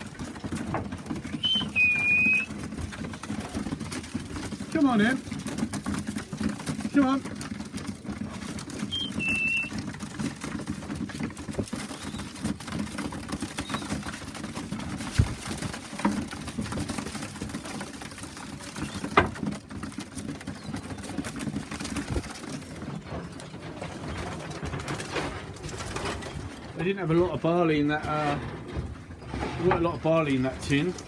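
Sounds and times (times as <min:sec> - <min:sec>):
pigeons cooing: 0:00.0 - 0:04.6, 0:05.2 - 0:26.7
birds tapping and pecking: 0:00.0 - 0:31.0
high whistle: 0:01.4 - 0:02.5.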